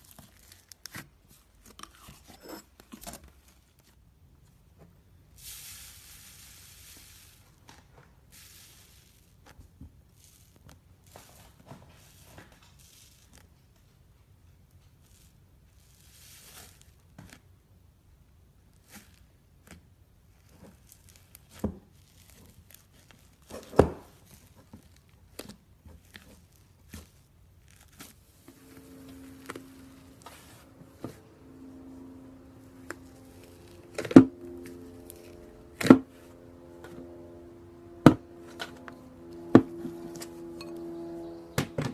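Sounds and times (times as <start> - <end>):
faint steady low tone: 28.4 - 41.8.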